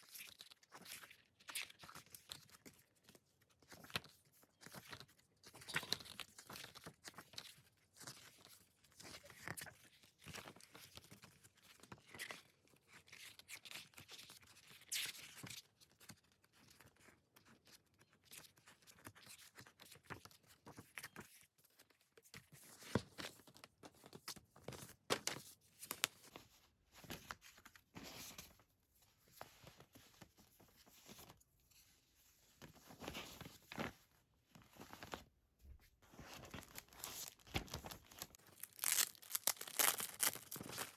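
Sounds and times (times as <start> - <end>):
soft taps and rustles: 22.2 - 38.4
plastic wrap tearing and crinkling: 36.6 - 40.9.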